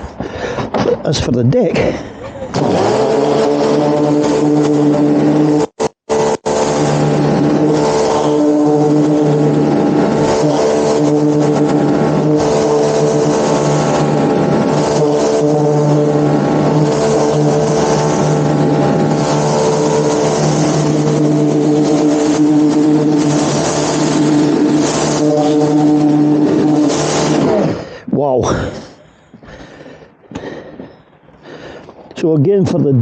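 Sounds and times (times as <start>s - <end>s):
pressure washer pump humming: 1.7s - 32.3s.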